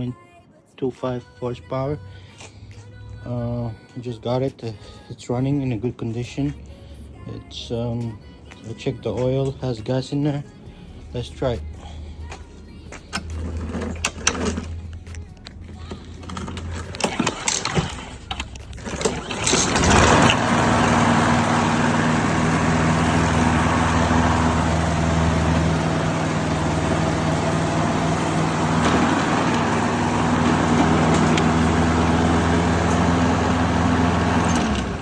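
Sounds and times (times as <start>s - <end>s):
lawn mower engine starting: 13.1s - 14.9s, 16.2s - 35.0s.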